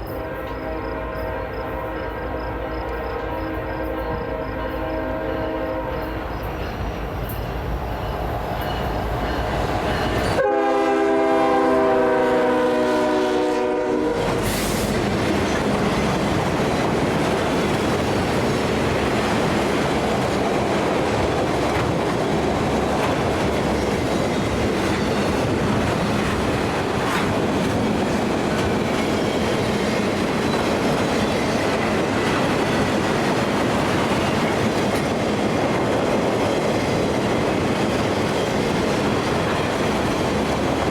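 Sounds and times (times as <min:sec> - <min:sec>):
train rumble: 0:00.0 - 0:40.9
locomotive horn blast: 0:00.1 - 0:06.3, 0:10.3 - 0:15.0
wheels clacking over rail joints: 0:14.2 - 0:40.9.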